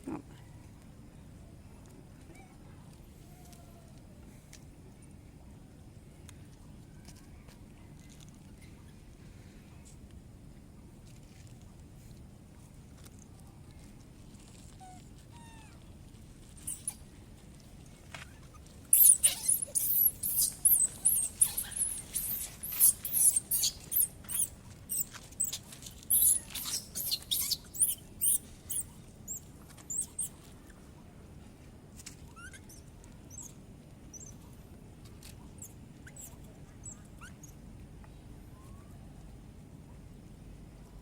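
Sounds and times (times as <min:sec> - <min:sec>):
baby monkey squeaking: 0:16.6 - 0:17.0, 0:18.3 - 0:30.4, 0:32.3 - 0:33.5, 0:34.1 - 0:34.4, 0:35.6 - 0:37.6.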